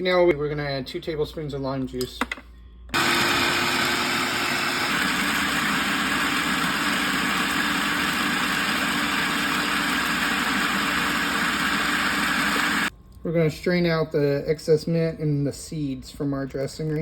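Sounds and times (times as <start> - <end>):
food processor motor whirring: 2.9 - 12.9.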